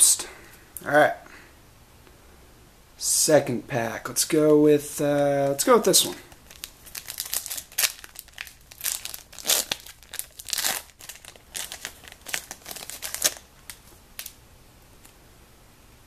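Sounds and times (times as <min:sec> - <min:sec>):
wrapper crinkling and tearing: 0:05.2 - 0:14.4.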